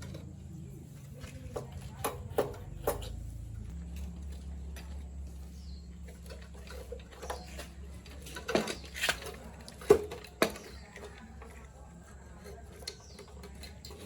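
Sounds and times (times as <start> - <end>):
steady low hum: 0.0 - 8.5.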